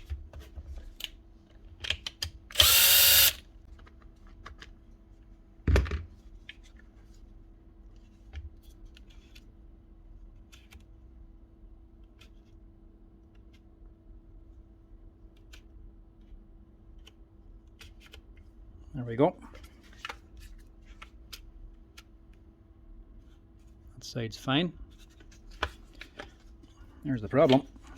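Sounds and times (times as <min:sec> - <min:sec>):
drill motor spinning up: 0:02.5 - 0:03.4
drill trigger and lever clicks: 0:02.5 - 0:03.4.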